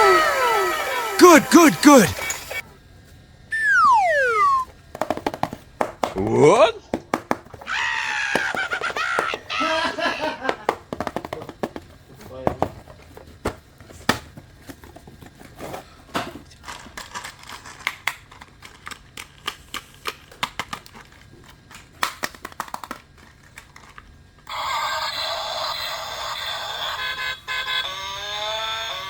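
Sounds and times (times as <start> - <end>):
toy electronic sound effect: 3.5 - 4.6.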